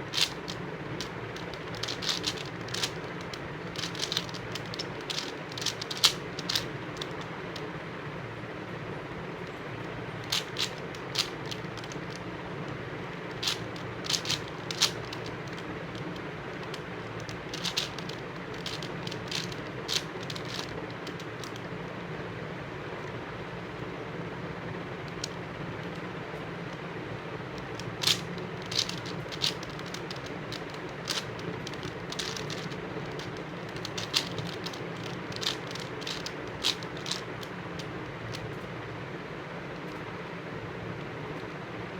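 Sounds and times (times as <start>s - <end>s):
steady low hum: 0.0s - 41.9s
puzzle cube clicking: 0.1s - 7.3s, 10.2s - 12.3s, 13.3s - 21.6s, 27.6s - 38.6s.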